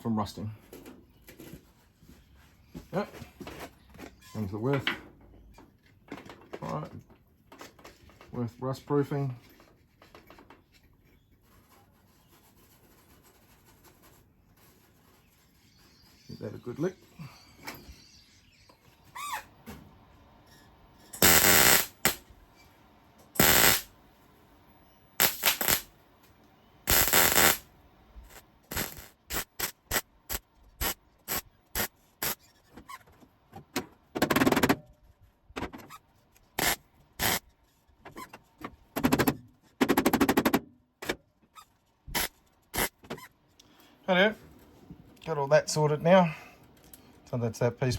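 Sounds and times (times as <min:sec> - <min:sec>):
arc welding crackle: 0:21.1 - 0:22.3, 0:23.4 - 0:24.0, 0:25.2 - 0:26.0, 0:26.9 - 0:32.4, 0:36.6 - 0:37.4, 0:42.1 - 0:43.0.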